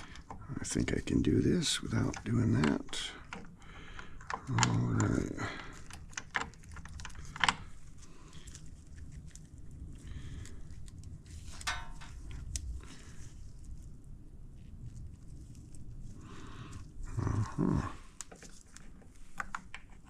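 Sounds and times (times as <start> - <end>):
clicks and knocks of metal parts: 11.4 - 12.6.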